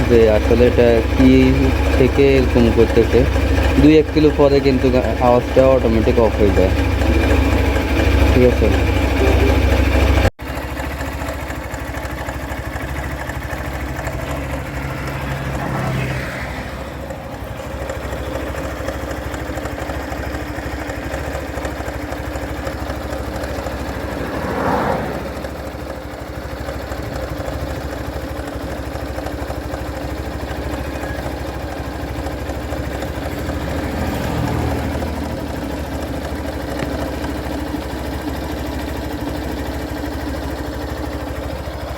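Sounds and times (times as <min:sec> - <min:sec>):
engine ticking: 0:00.0 - 0:41.9
motorcycle engine idling: 0:00.0 - 0:41.9
engine revving briefly: 0:14.1 - 0:17.6, 0:23.4 - 0:26.0.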